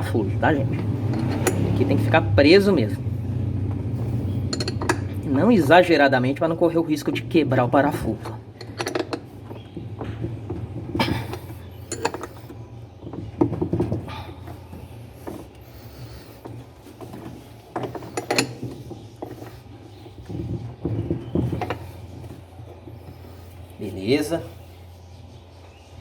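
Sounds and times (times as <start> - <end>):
steady low hum: 0.0 - 26.0
metallic clicks and knocks: 0.7 - 1.8, 4.5 - 5.2, 8.1 - 14.0.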